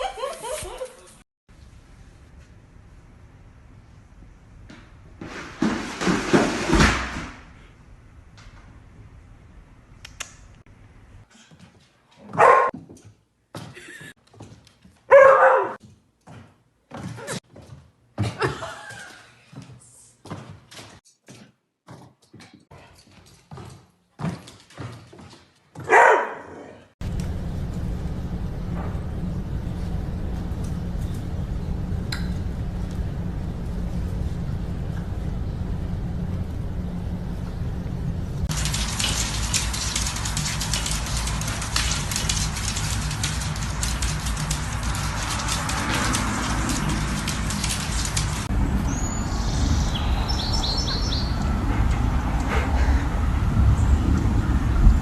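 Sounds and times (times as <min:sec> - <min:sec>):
dog barking: 0:12.3 - 0:12.7, 0:15.1 - 0:15.8, 0:25.8 - 0:26.8
steady low noise: 0:27.0 - 0:39.5
steady low rumble: 0:27.0 - 0:55.0.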